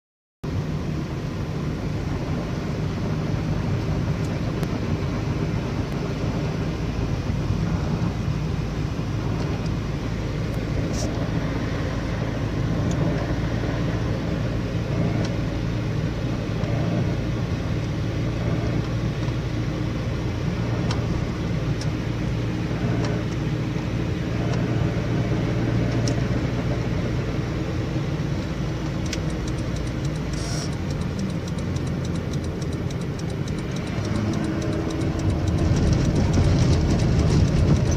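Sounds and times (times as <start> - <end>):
car engine and road noise: 0.4 - 37.9
sharp ticks: 28.9 - 37.9
rapid clicks: 29.0 - 37.9.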